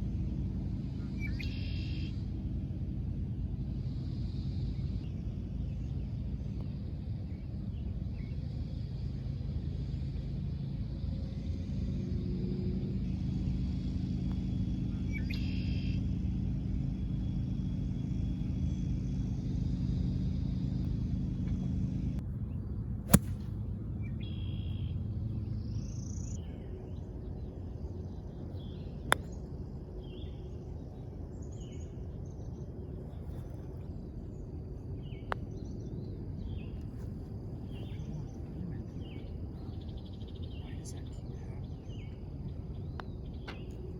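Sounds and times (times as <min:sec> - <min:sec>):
low engine hum: 0:00.0 - 0:43.9
birds chirping: 0:24.0 - 0:43.9.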